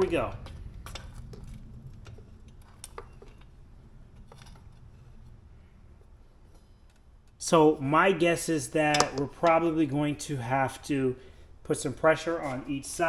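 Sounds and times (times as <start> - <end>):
low steady hum: 0.0 - 13.0
metallic clicks and taps: 8.9 - 9.6.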